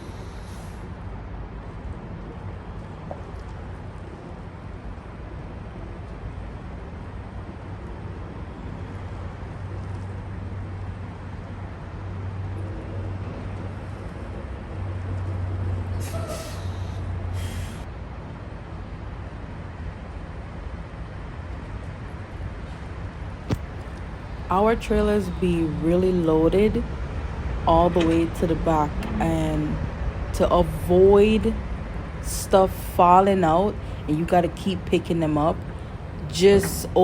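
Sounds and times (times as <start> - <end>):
air-brake hisses: 16.0 - 17.8
diesel truck engine humming: 23.6 - 37.0.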